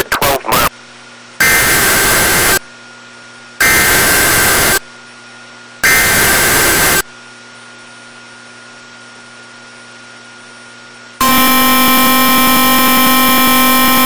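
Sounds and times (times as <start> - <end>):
buzzing digital data bursts: 1.4 - 2.6, 3.6 - 4.8, 5.8 - 7.0, 11.2 - 14.0.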